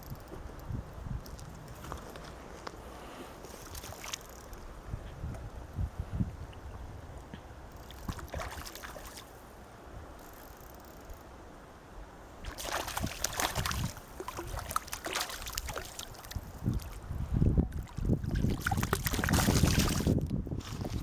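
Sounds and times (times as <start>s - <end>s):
water sloshing and splashing: 3.4s - 4.6s, 7.8s - 9.4s, 12.4s - 21.0s.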